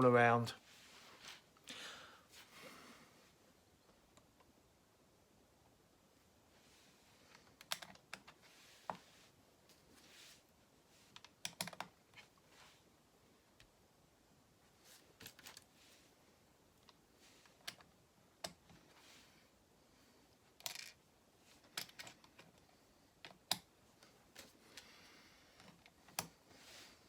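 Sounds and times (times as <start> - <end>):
plastic pieces clicking together: 20.6 - 21.0.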